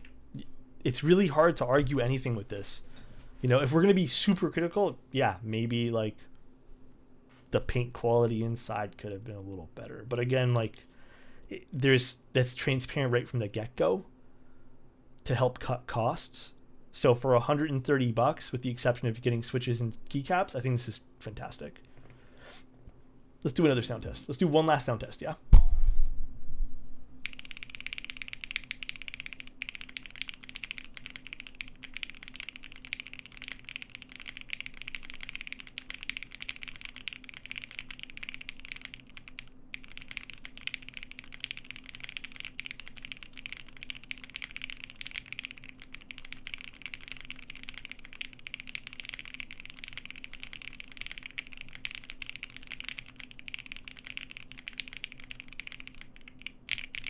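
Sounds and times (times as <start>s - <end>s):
mechanical keyboard typing: 27.2s - 57.0s.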